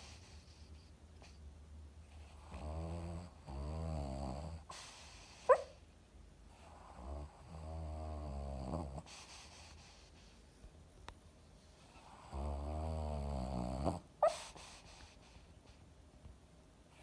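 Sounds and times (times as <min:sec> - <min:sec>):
dog snoring: 0:02.1 - 0:05.6, 0:06.5 - 0:10.1, 0:11.8 - 0:15.2.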